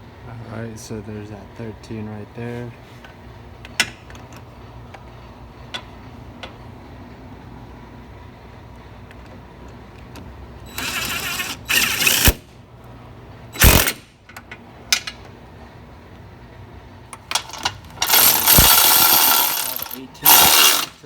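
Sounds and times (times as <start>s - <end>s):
power tool running in bursts: 10.7s - 12.4s, 13.6s - 14.0s, 18.0s - 21.0s.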